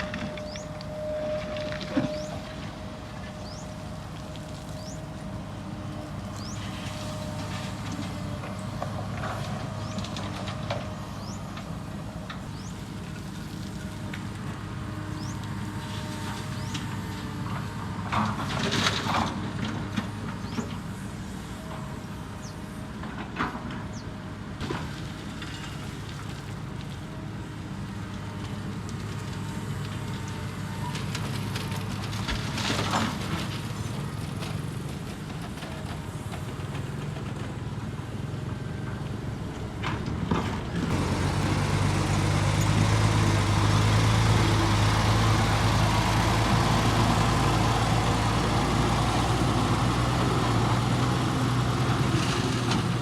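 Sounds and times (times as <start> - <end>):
construction machine engine running: 0.0 - 23.3, 23.9 - 53.0.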